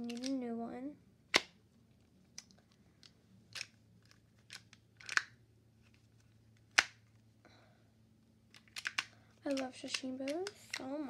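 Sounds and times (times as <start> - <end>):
magnetic cube pieces clicking: 0.0 - 0.4, 1.3 - 1.6, 2.4 - 5.4, 8.5 - 11.0.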